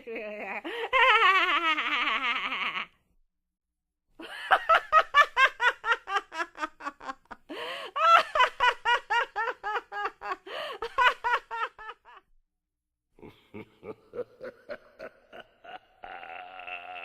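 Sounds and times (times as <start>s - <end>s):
loud in-breath: 7.5s - 8.0s, 10.4s - 10.8s.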